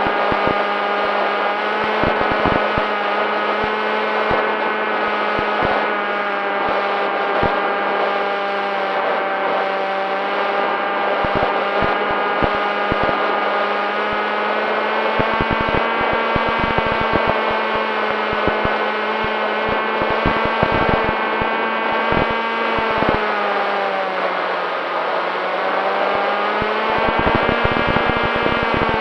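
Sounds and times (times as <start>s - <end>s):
electric motor and propeller whine: 0.0s - 29.0s
short crackles and knocks: 2.0s - 2.9s, 19.6s - 21.4s.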